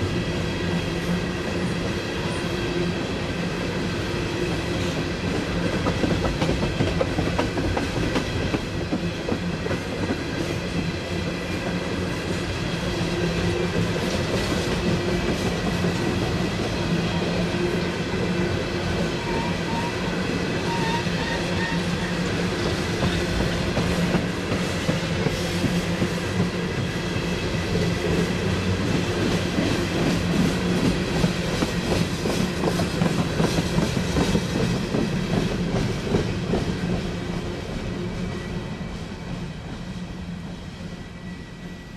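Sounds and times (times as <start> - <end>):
train wheels clicking over rail joints: 4.8 - 12.9, 21.5 - 37.4.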